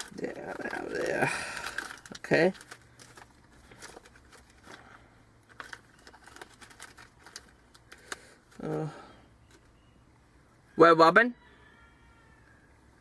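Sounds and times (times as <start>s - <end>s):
plastic cards clicking and rustling: 0.0s - 9.7s.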